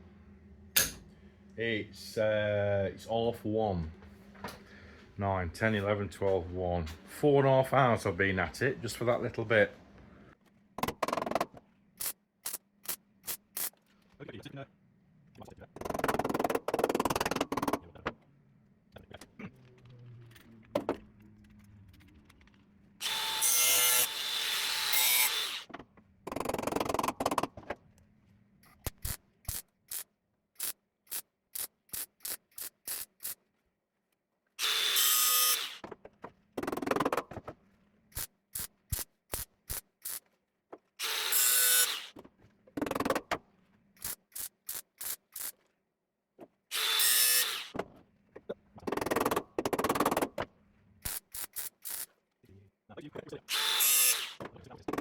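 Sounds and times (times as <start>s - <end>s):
power tool bursts: 23.0s - 25.7s, 34.6s - 35.8s, 41.0s - 42.2s, 46.7s - 47.8s, 53.5s - 54.4s.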